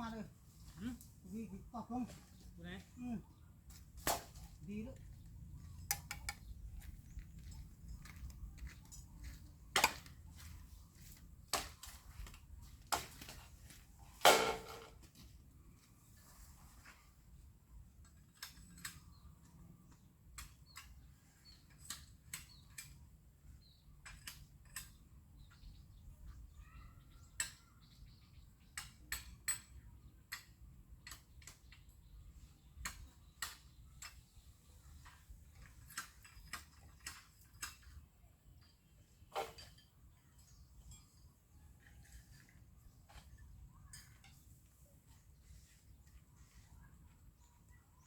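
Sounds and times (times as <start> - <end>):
sharp clicks and light knocks: 5.8 - 10.2, 28.6 - 31.9.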